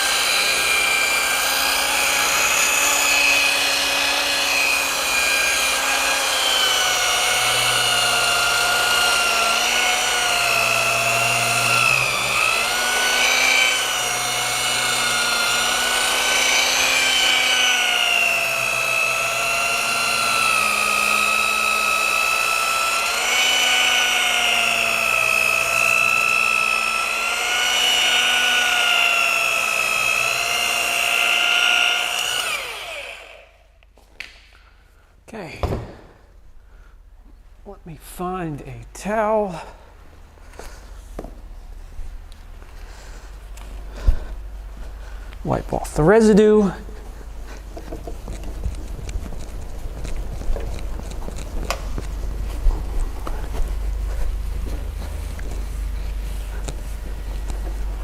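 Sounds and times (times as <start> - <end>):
rotary polisher motor whine: 0.0 - 34.3, 46.0 - 58.0.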